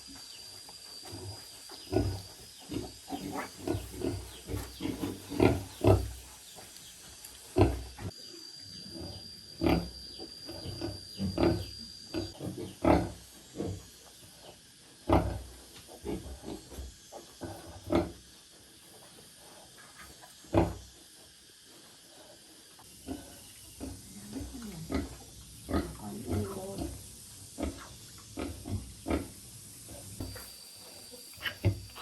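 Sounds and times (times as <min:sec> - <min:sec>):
pig grunting: 0:01.9 - 0:06.2.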